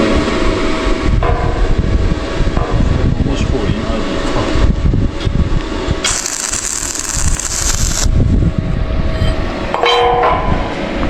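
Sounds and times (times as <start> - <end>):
welding arc sizzling: 6.0 - 8.1
welding machine running: 6.0 - 8.1.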